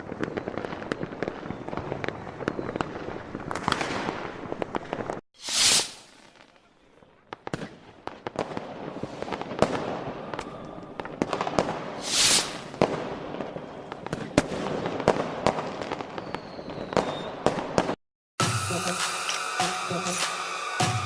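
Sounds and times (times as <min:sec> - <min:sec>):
fireworks cracks and pops: 0:00.0 - 0:18.0
firework hissing burst: 0:05.4 - 0:06.4, 0:12.0 - 0:12.8, 0:18.4 - 0:21.0
music with a beat: 0:18.4 - 0:21.0.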